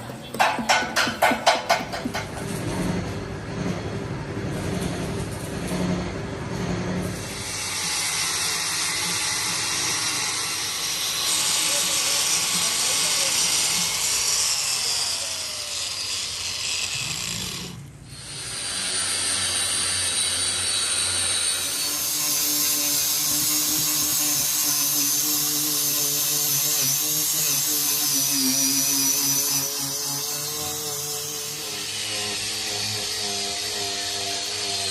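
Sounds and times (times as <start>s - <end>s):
power tool whining: 7.0s - 34.9s.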